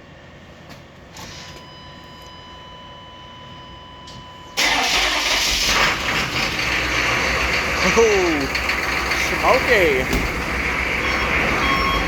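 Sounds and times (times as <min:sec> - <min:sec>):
diesel engine cranking and running: 0:04.6 - 0:12.0.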